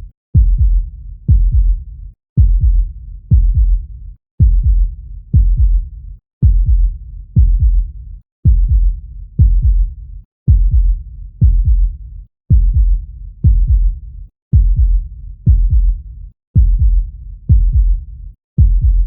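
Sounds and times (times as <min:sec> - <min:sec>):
heartbeat thumps: 0:00.4 - 0:01.8, 0:02.4 - 0:16.0, 0:16.6 - 0:18.0, 0:18.6 - 0:19.0.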